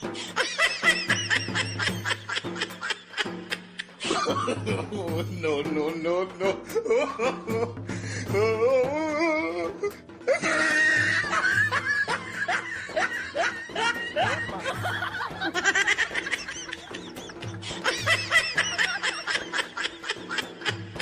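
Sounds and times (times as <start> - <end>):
snickering and chuckling laughter: 0.0 - 5.2, 9.7 - 21.0
background music with steady beat: 0.0 - 21.0.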